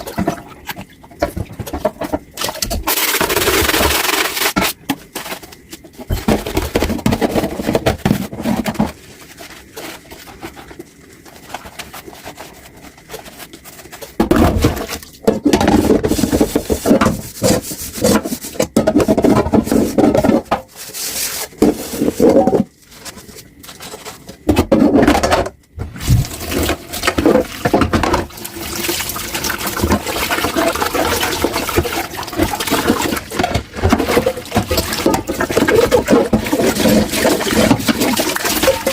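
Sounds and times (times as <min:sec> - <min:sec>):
dishes being scrubbed: 0:06.0 - 0:22.7, 0:25.8 - 0:38.9
tap water running: 0:25.8 - 0:38.9.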